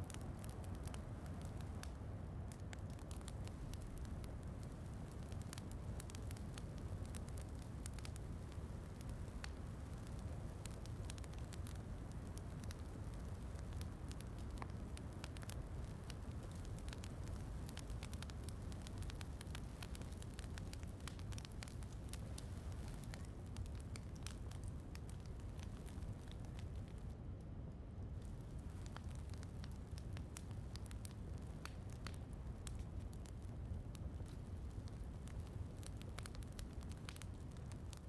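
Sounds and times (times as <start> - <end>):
wood fire crackling: 0.0 - 38.0.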